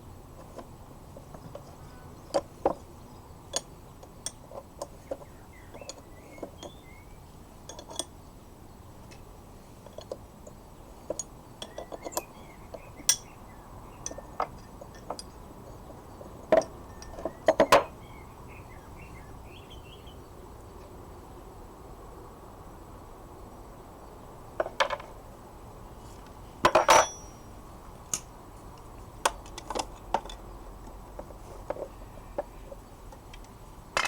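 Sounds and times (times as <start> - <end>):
metal vise parts clinking: 7.6 - 8.2, 11.0 - 13.4, 14.0 - 15.4, 16.2 - 18.0, 26.6 - 27.5.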